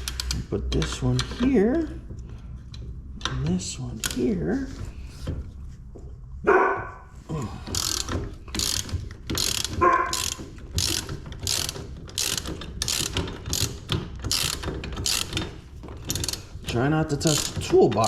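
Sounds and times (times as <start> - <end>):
socket wrench ratchet clicking: 7.7 - 16.5.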